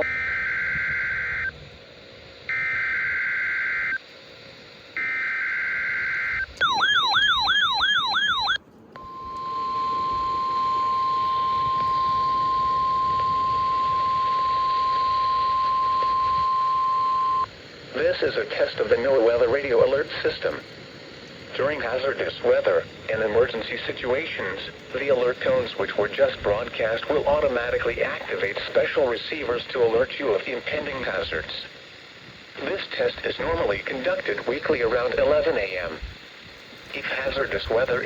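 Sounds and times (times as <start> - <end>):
warbling siren-like alarm: 0.0 - 1.7, 2.4 - 4.1, 4.9 - 17.6
buzzy digital header data bursts: 0.0 - 38.0
steady weather radio alert tone: 0.0 - 38.0.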